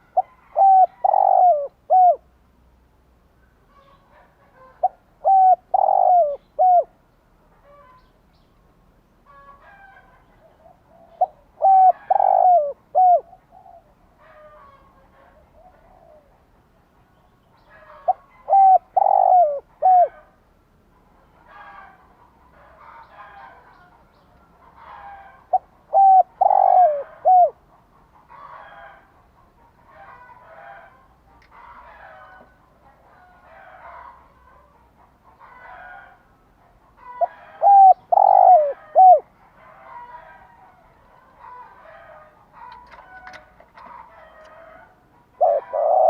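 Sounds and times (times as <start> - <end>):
dove cooing: 0.0 - 2.3, 3.8 - 7.0, 9.3 - 16.5, 17.7 - 20.4, 24.7 - 27.7, 37.0 - 46.0.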